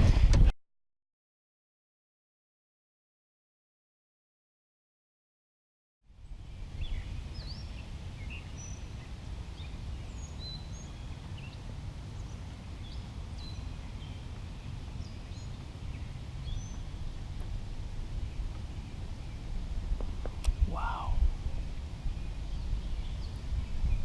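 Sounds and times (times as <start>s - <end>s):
songbirds chirping: 6.1s - 24.0s
steady low rumble: 6.1s - 24.0s.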